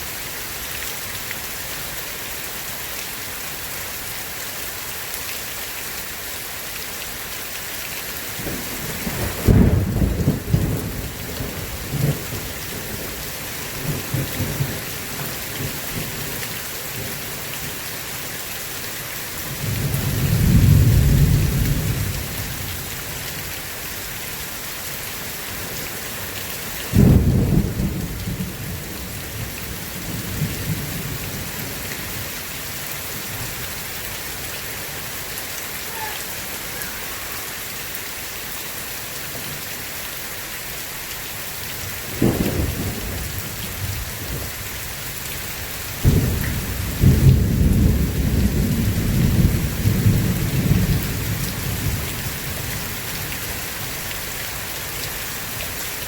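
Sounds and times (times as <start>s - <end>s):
heavy rain: 0.0s - 56.0s
rolling thunder rumble: 8.4s - 13.1s, 42.1s - 44.6s, 46.0s - 52.8s.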